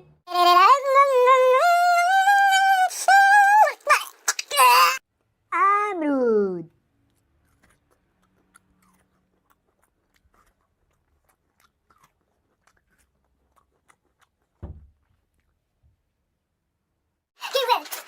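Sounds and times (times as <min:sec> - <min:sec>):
low thump: 0:14.6 - 0:15.0.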